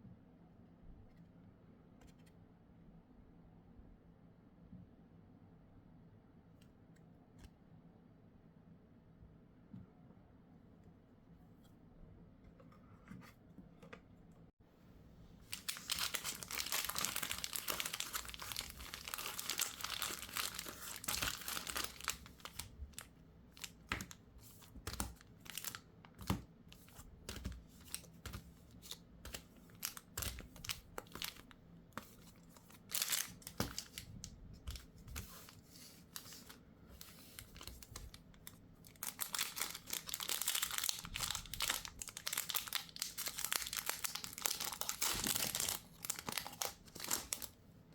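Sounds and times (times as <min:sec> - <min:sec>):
plastic packaging crinkling: 0:15.4 - 0:47.6.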